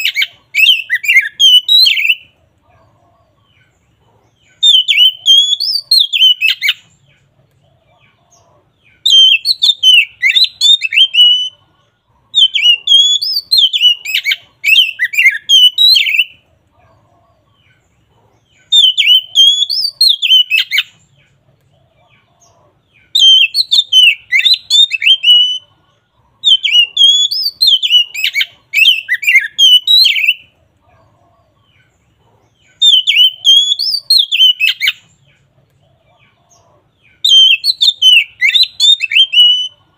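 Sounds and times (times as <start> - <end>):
bird whistled song: 0.0 - 2.4, 4.4 - 7.3, 8.8 - 11.6, 12.3 - 16.4, 18.5 - 21.4, 22.0 - 25.7, 26.4 - 30.6, 32.6 - 35.4, 36.5 - 39.9.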